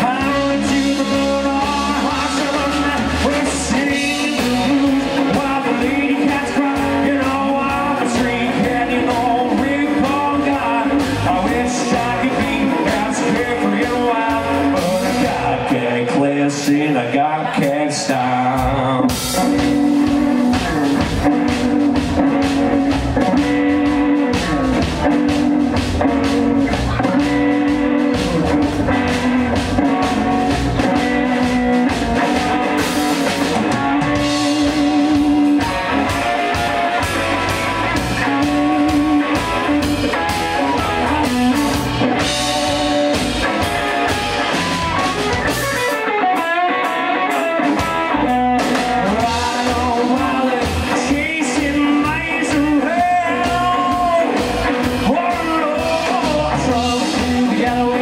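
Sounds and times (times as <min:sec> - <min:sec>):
drum kit: 0:00.0 - 0:58.0
guitar lines: 0:00.0 - 0:58.0
live band playing rockabilly: 0:00.0 - 0:58.0.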